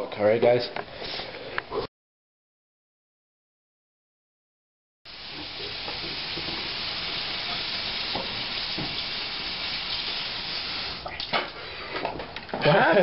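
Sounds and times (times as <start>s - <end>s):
steady hiss: 5.1s - 11.6s.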